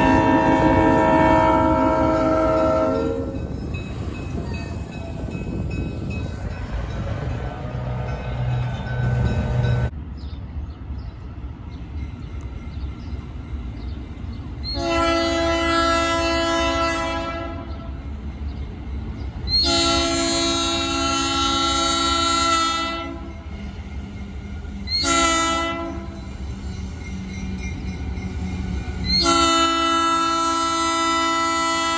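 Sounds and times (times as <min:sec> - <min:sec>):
locomotive air horn: 0:00.0 - 0:03.4, 0:14.7 - 0:17.8, 0:19.5 - 0:23.3, 0:24.9 - 0:26.2, 0:29.1 - 0:31.9
passing train rumble: 0:00.0 - 0:31.9.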